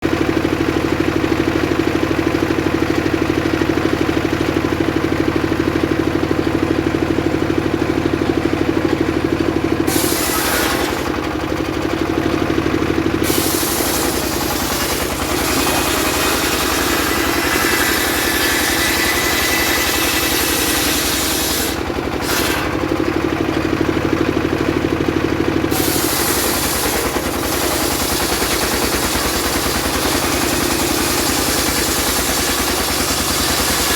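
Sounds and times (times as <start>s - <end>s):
sawmill engine running: 0.0s - 33.9s
saw blade cutting wood: 9.8s - 11.4s, 13.1s - 23.0s, 25.7s - 33.9s.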